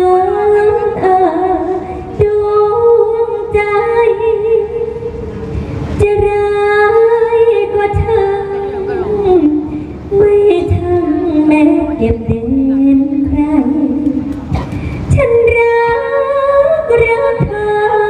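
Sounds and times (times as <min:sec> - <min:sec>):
woman singing long held notes: 0:06.0 - 0:18.0.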